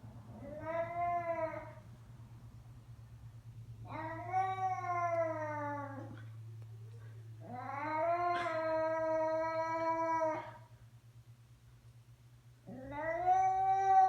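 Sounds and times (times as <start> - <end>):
cat yowling: 3.9 - 6.2, 7.4 - 10.7, 12.7 - 14.0.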